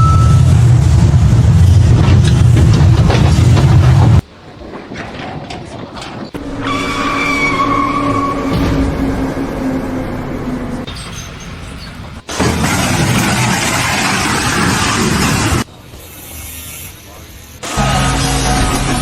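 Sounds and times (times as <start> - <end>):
heavy engine rumble: 0.0 - 19.0
machine high whine: 6.4 - 11.7, 17.6 - 19.0.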